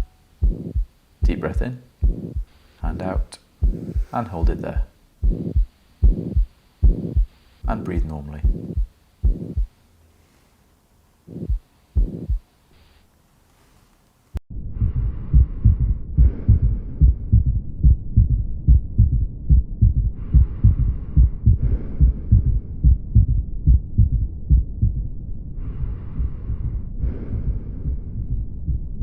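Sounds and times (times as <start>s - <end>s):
heartbeat thumps: 0.0s - 9.8s, 11.3s - 12.5s, 14.5s - 29.0s
soft breathing: 2.0s - 7.7s, 8.5s - 17.6s, 20.1s - 23.0s, 25.5s - 28.8s.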